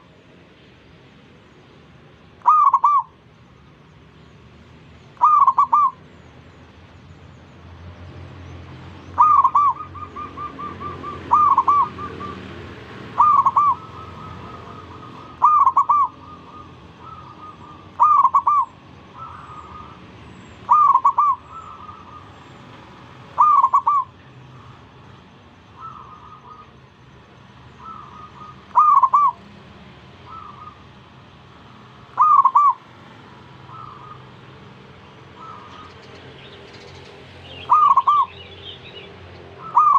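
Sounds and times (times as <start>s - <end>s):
dove cooing: 2.4s - 3.1s, 5.2s - 6.0s, 9.2s - 22.5s, 23.2s - 24.8s, 25.8s - 26.8s, 27.8s - 29.5s, 30.2s - 31.0s, 32.1s - 32.9s, 33.6s - 34.5s, 35.2s - 36.0s, 37.5s - 38.4s, 39.6s - 39.9s
faint distant dove coos: 27.8s - 29.4s.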